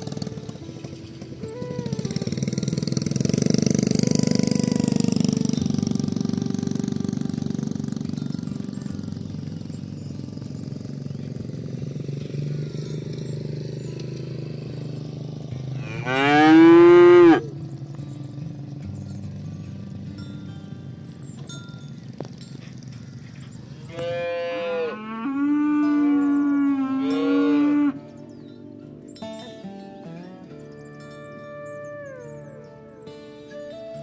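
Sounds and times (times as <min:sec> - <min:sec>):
cattle mooing: 0:15.8 - 0:17.5, 0:23.8 - 0:28.2.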